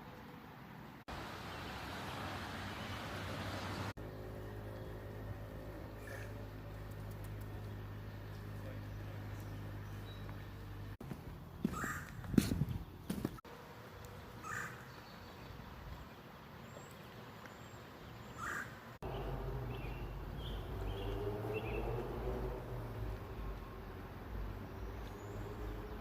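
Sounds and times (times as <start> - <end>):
low rumble with rising tone: 4.0 - 11.6, 19.0 - 26.0
crow cawing: 11.7 - 12.2, 14.4 - 14.8, 18.4 - 18.8.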